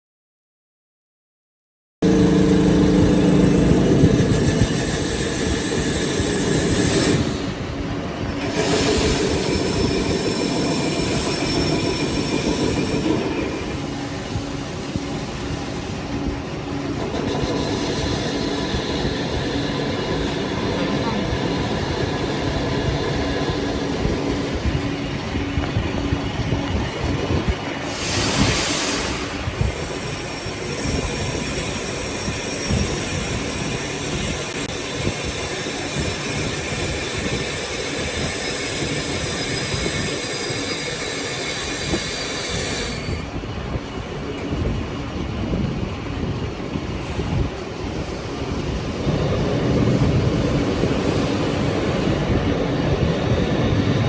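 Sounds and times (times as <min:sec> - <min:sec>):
thin high whine: 0:02.0 - 0:25.7
lathe mechanical rumble: 0:02.0 - 0:54.0
brief hiss: 0:27.8 - 0:29.6.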